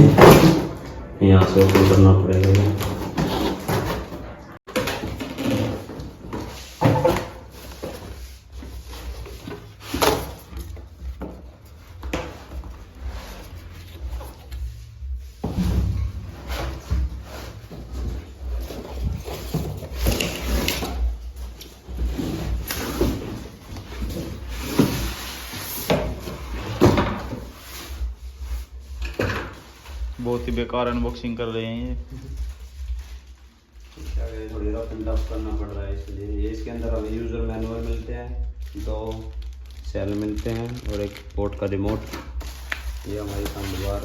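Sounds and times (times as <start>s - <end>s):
cardboard rustling and scraping: 1.4s - 44.0s.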